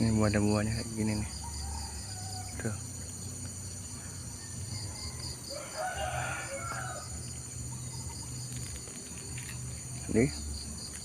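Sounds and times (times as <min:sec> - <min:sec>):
high-pitched insect drone: 0:00.0 - 0:11.0
rooster crowing: 0:01.3 - 0:02.7, 0:04.0 - 0:07.4.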